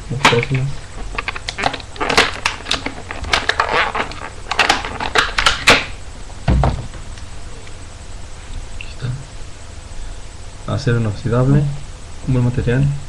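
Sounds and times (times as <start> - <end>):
multitool sheath clicks and crackles: 0.2 - 5.9
dull thump: 6.4 - 7.1.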